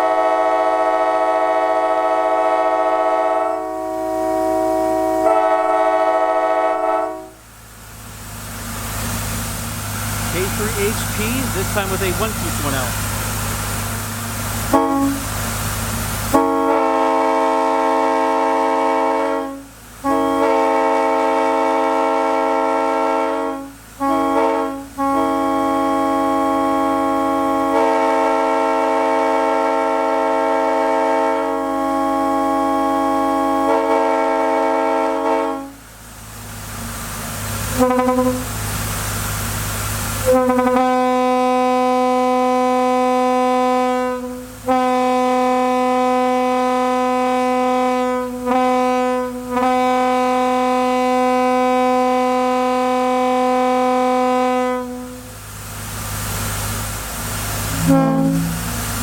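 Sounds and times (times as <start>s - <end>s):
locomotive air horn blasts: 0.0s - 7.5s, 10.0s - 35.8s, 37.6s - 38.8s, 40.1s - 55.4s, 57.1s - 59.0s
rushing air noise: 7.7s - 16.3s, 55.8s - 59.0s.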